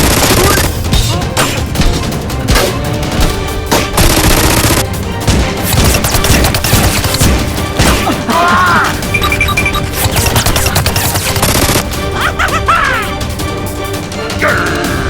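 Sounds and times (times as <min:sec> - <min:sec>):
rapid gunfire: 0:00.0 - 0:01.8, 0:03.7 - 0:08.2, 0:09.0 - 0:12.0
background music: 0:00.0 - 0:15.0.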